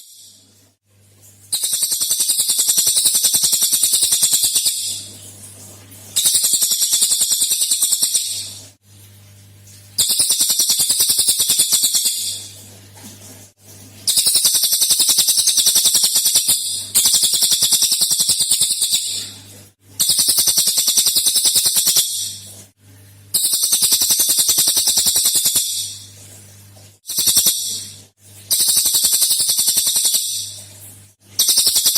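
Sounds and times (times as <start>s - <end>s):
songbird fast high trilling: 1.5s - 5.1s, 6.2s - 8.6s, 10.0s - 12.5s, 14.1s - 19.3s, 20.0s - 22.4s, 23.4s - 26.0s, 27.1s - 27.9s, 28.5s - 30.5s, 31.4s - 31.9s.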